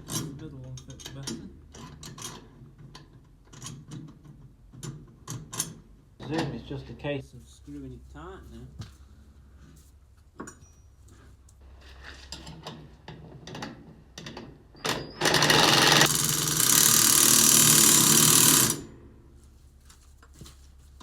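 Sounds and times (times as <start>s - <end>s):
impact gun rattling: 15.2s - 18.8s.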